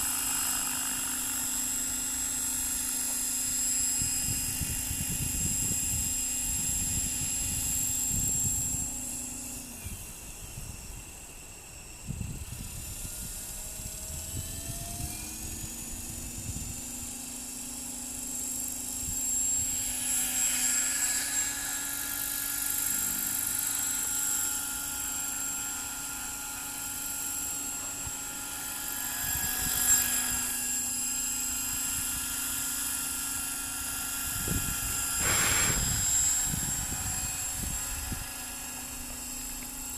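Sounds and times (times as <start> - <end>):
model helicopter rotor whine: 0.0 - 39.9
wind buffeting microphone: 4.0 - 8.9, 34.2 - 38.6.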